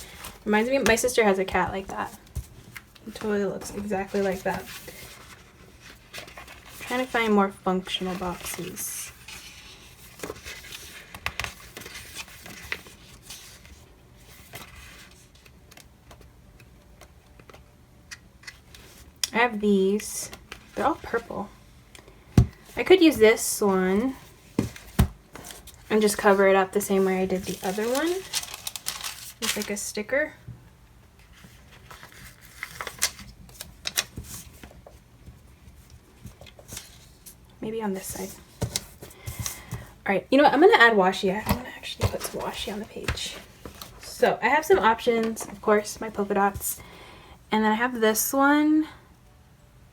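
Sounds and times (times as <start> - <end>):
paper pages rustling: 0.0 - 16.3, 24.0 - 29.8, 31.2 - 35.0, 35.6 - 37.4, 38.0 - 39.9, 41.3 - 46.6.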